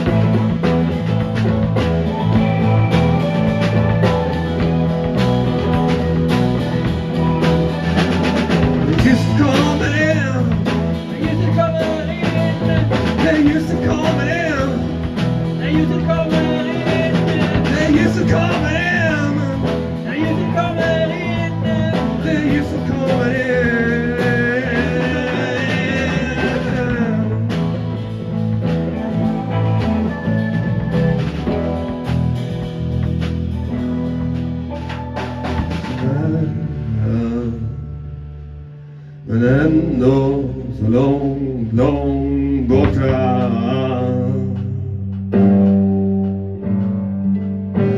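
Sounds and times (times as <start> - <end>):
rock band playing: 0.0 - 36.4.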